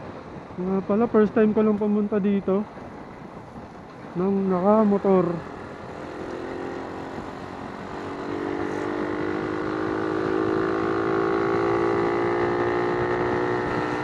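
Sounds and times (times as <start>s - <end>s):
motor vehicle engine running: 3.2s - 14.0s.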